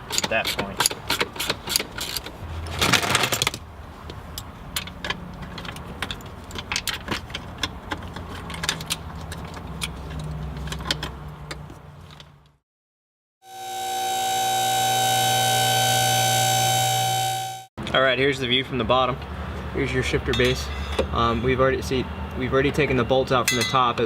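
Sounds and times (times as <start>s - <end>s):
low hum: 13.4s - 17.7s.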